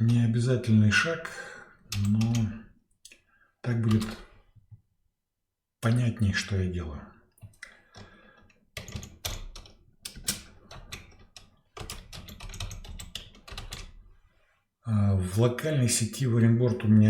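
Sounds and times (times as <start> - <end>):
typing on computer keyboard: 1.9 - 2.6, 7.9 - 14.0.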